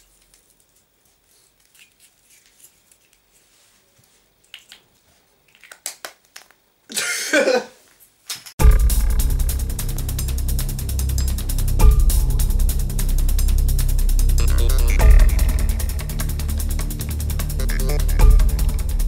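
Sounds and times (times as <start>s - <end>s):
paper handling sounds: 0.0s - 5.9s
fast rhythmic ticking music: 8.6s - 19.0s.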